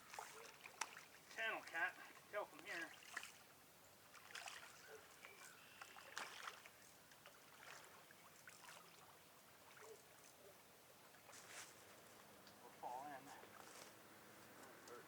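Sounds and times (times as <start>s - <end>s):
water splashing: 0.0s - 10.4s.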